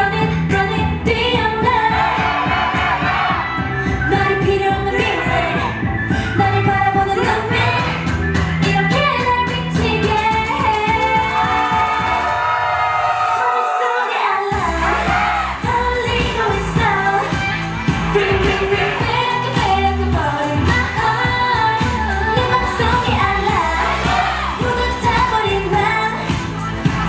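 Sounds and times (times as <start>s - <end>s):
dance track pounding beat: 0.0s - 12.5s, 14.5s - 27.0s
female group singing: 1.0s - 5.8s, 6.4s - 8.2s, 13.3s - 27.0s.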